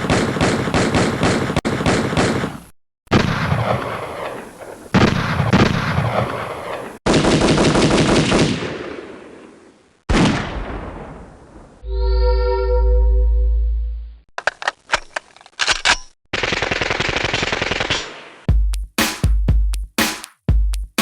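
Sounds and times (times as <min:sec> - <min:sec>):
automatic gunfire bursts: 0:00.0 - 0:02.6, 0:16.4 - 0:18.2.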